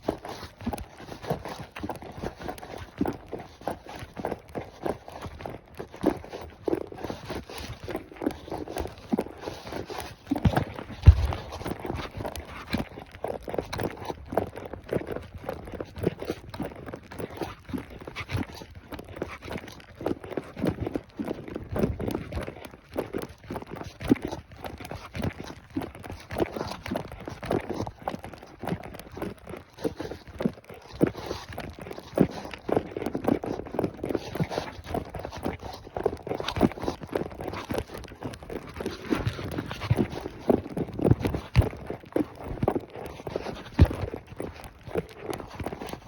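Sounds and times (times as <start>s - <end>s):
horse hooves clip-clopping: 0.0s - 46.0s.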